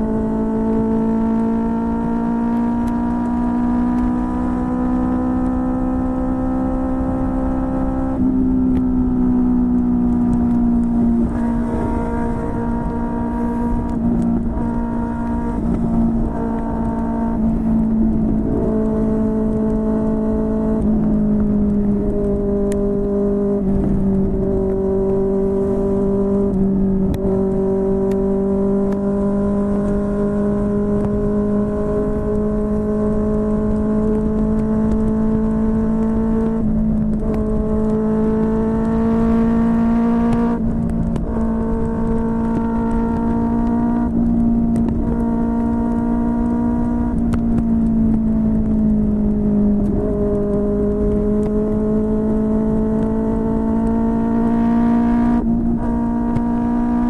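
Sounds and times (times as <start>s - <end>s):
motorcycle engine on the road: 0.0s - 57.0s.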